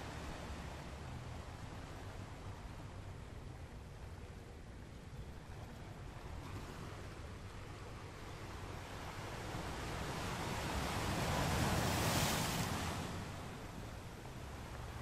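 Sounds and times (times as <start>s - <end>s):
surf hiss: 0.0s - 3.4s, 5.9s - 15.0s
ocean wave breaking: 9.2s - 13.7s.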